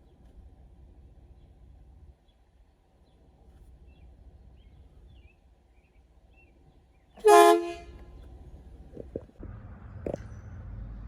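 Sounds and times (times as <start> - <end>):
air horn blast: 7.2 - 8.0.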